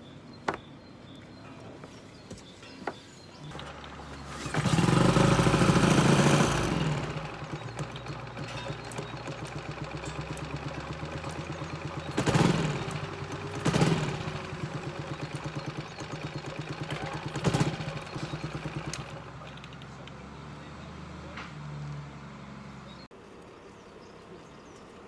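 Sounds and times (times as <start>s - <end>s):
outboard motor idling: 3.4s - 21.3s.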